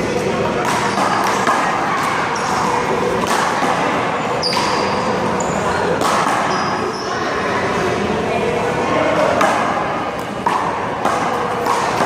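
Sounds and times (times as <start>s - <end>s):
people talking: 0.0s - 12.0s.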